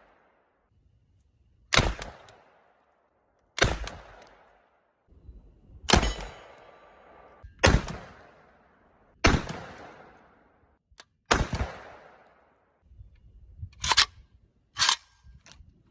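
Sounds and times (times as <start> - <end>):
shotgun shots echoing: 1.7 - 2.8, 3.6 - 4.6, 5.9 - 10.4, 11.3 - 12.4.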